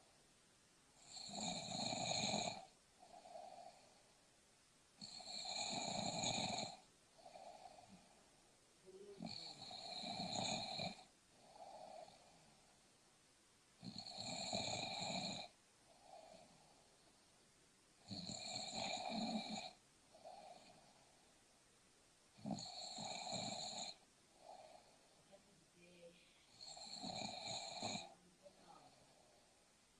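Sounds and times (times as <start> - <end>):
person snoring: 1.0 - 4.0, 5.0 - 8.2, 8.9 - 12.6, 13.8 - 16.8, 18.0 - 21.0, 22.4 - 25.4, 26.2 - 29.6
soft breath: 3.0 - 4.3, 6.8 - 10.1, 15.8 - 17.4, 23.9 - 29.9.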